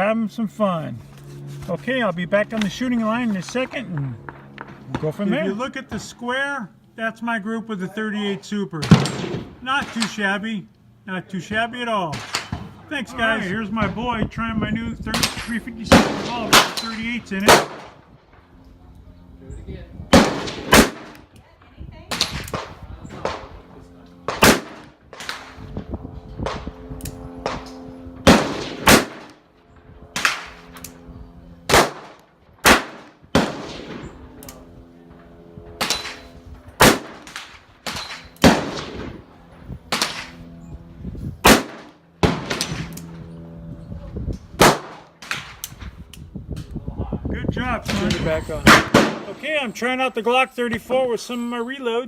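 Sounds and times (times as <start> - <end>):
revolver gunshots: 8.8 - 10.4, 12.0 - 14.0, 15.1 - 18.4, 20.1 - 21.3, 22.1 - 25.7, 26.4 - 40.7, 41.4 - 43.6, 44.6 - 45.8, 47.8 - 49.6.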